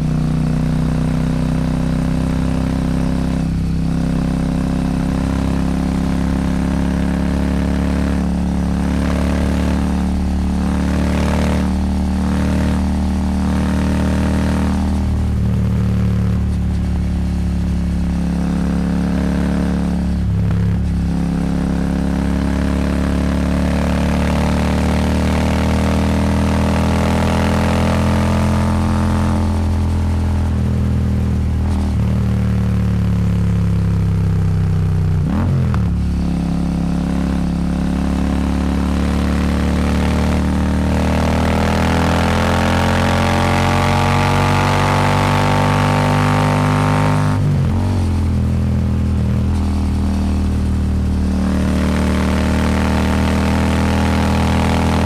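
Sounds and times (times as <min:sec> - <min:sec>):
motorcycle engine cruising: 0:00.0 - 0:55.0.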